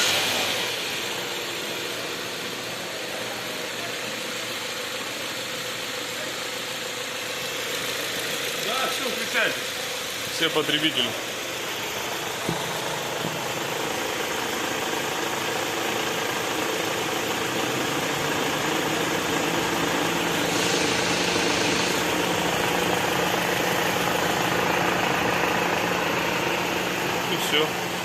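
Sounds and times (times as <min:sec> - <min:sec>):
car engine idling: 0:00.0 - 0:28.0.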